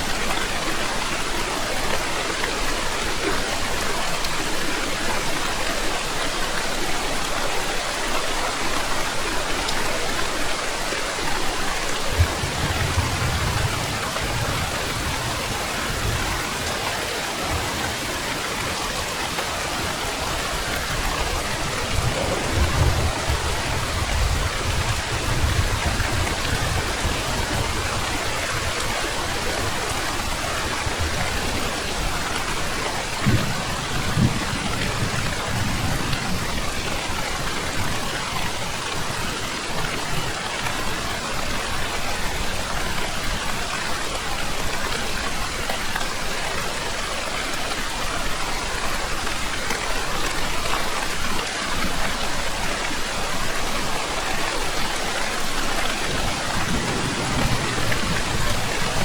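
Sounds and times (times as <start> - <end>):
heavy rain falling: 0.0 - 59.0
low rumbles of thunder: 12.0 - 16.8, 20.0 - 37.2, 56.0 - 59.0.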